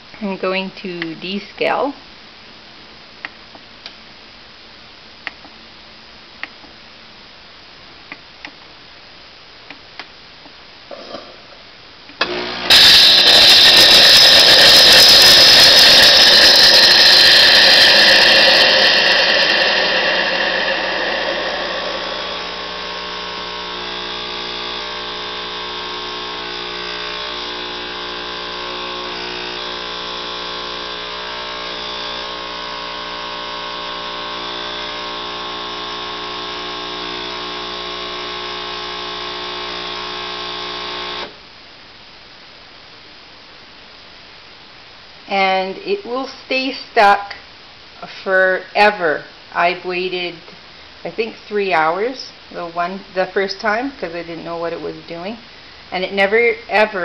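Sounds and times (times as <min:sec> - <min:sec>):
coffee machine pump humming: 0:12.2 - 0:41.4.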